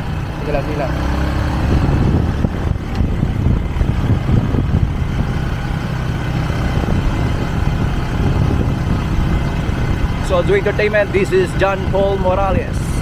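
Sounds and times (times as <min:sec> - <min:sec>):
road noise: 0:00.0 - 0:13.0
vehicle engine rumble: 0:00.0 - 0:13.0.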